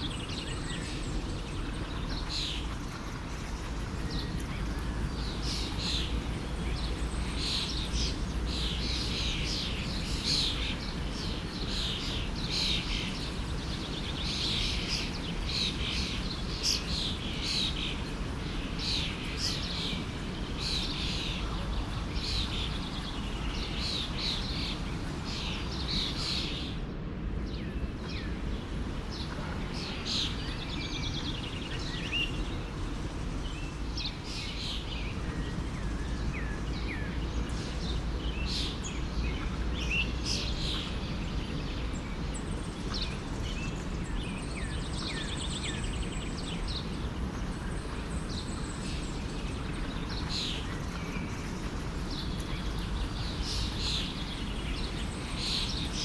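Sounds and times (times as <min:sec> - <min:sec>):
songbirds chirping: 0:00.0 - 0:56.0
stream rushing: 0:15.0 - 0:26.9, 0:27.8 - 0:43.3.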